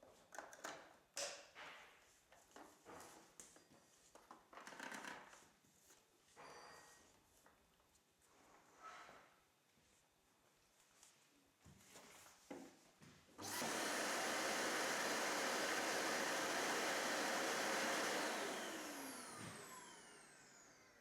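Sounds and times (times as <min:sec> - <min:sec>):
vacuum cleaner running: 0:13.4 - 0:21.0
vacuum motor whine spinning down: 0:13.4 - 0:21.0.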